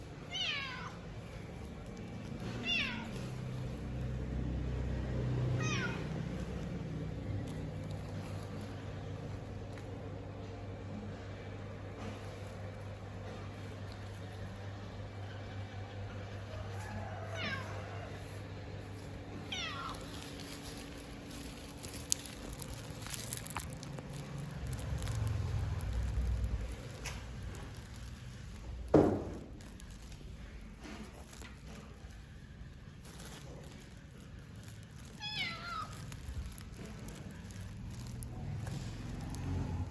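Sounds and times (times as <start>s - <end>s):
cat meowing: 0.2s - 1.4s, 2.4s - 3.6s, 5.5s - 6.4s, 17.2s - 18.2s, 19.3s - 20.4s, 35.1s - 36.3s.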